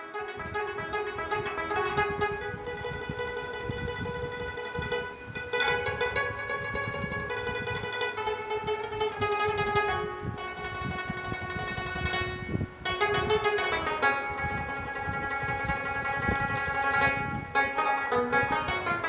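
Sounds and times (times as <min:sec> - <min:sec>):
plucked string instrument music: 0:00.0 - 0:19.0.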